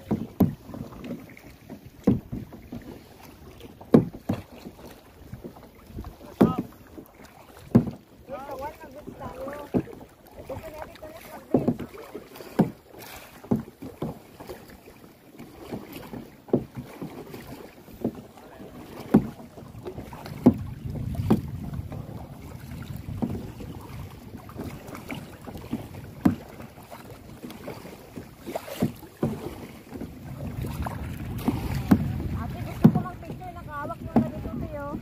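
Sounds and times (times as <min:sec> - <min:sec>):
paddle splashes and knocks: 0:00.0 - 0:35.0
wind rumble on microphone: 0:19.4 - 0:26.5, 0:30.0 - 0:35.0.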